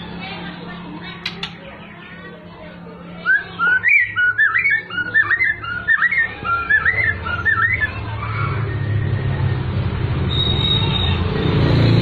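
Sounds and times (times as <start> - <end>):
bird singing whistled notes: 3.2 - 9.7, 10.3 - 11.3.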